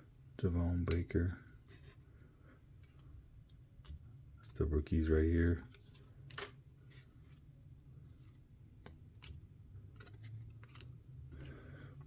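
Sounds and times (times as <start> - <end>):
trading cards being handled: 8.2 - 11.6.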